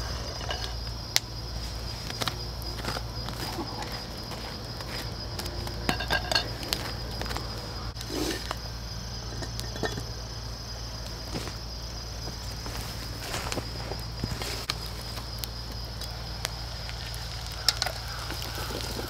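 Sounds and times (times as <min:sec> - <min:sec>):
high insect trill: 0:00.0 - 0:19.0
small knocks: 0:02.1 - 0:07.4
metallic clinks of cookware: 0:05.9 - 0:06.5.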